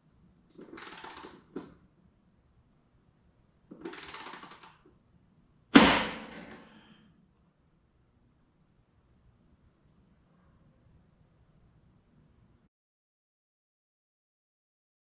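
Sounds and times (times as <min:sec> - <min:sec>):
hand tools clicking and rattling: 0:00.5 - 0:01.7, 0:03.7 - 0:04.8
loud metallic clank: 0:05.8 - 0:06.7.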